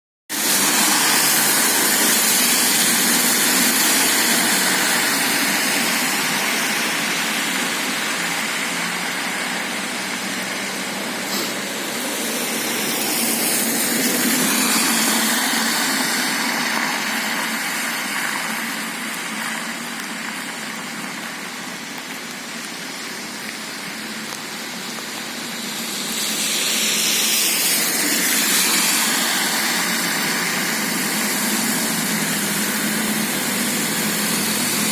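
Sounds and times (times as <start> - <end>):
rainwater rushing in street: 0.3 - 34.9
vehicles driving through water: 0.3 - 34.9.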